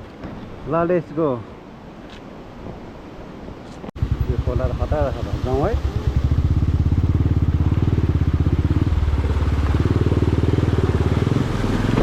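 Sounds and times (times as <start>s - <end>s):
motorcycle engine running: 4.0s - 12.0s.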